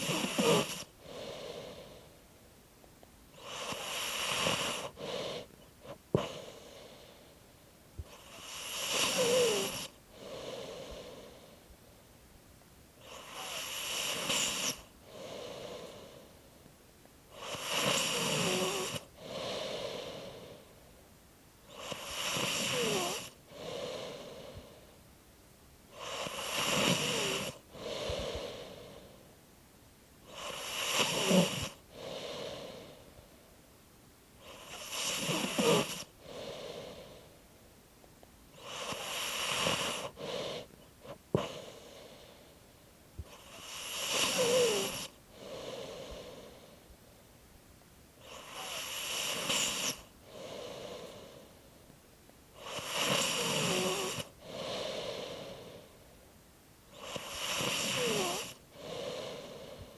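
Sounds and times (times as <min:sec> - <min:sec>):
person snoring: 0:00.0 - 0:02.0, 0:03.4 - 0:07.2, 0:08.0 - 0:11.6, 0:13.0 - 0:16.3, 0:17.3 - 0:20.6, 0:21.7 - 0:24.8, 0:25.9 - 0:29.2, 0:30.3 - 0:33.1, 0:34.4 - 0:37.2, 0:38.6 - 0:42.4, 0:43.2 - 0:46.8, 0:48.2 - 0:51.5, 0:52.6 - 0:55.9, 0:56.9 - 0:59.9.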